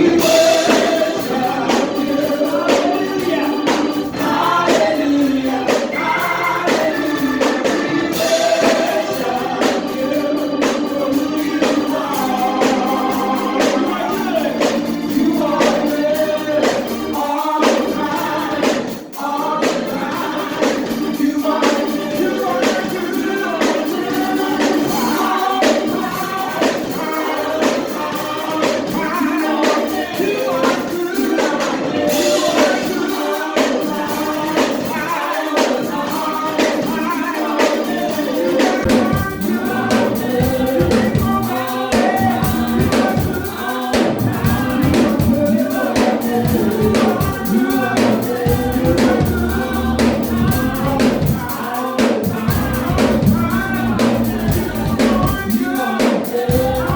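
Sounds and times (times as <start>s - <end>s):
gospel choir singing: 0.0s - 56.9s
live band with steady beat: 0.0s - 56.9s
deep bass: 52.5s - 55.4s.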